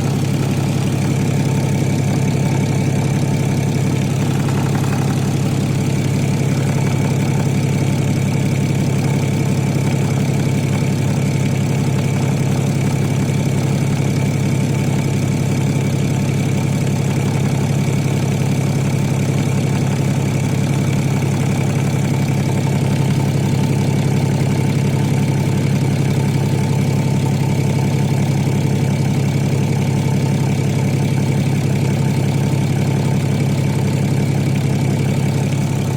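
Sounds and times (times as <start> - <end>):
diesel engine idling: 0.0 - 35.9
engine knock: 0.0 - 35.9.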